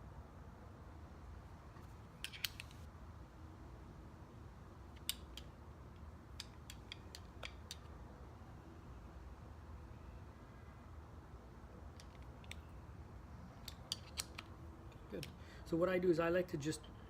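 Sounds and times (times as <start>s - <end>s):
small metal parts clicking: 2.2s - 2.8s, 4.9s - 7.9s, 13.6s - 15.4s.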